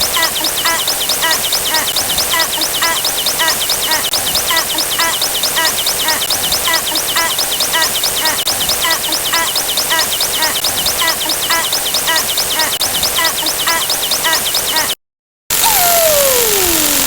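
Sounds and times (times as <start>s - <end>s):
high electronic chirps: 0.0s - 15.0s
static hiss: 15.5s - 17.0s.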